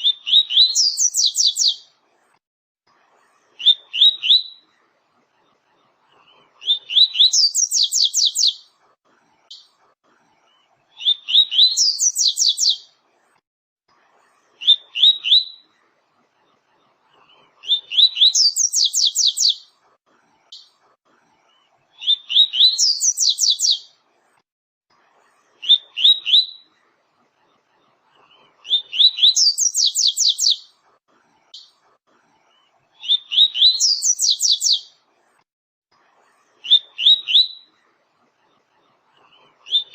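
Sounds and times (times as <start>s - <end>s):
bird singing with trill: 0.0s - 1.8s, 3.6s - 4.6s, 6.6s - 8.6s, 11.0s - 12.9s, 17.7s - 19.7s, 22.0s - 23.9s, 28.7s - 30.7s, 33.0s - 34.9s, 36.7s - 37.7s.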